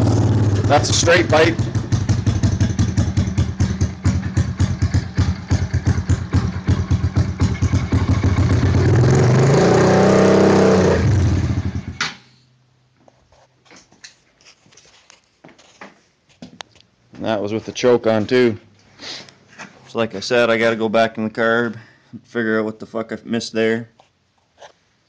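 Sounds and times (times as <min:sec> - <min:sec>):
dirt bike engine revving: 0:00.0 - 0:11.9.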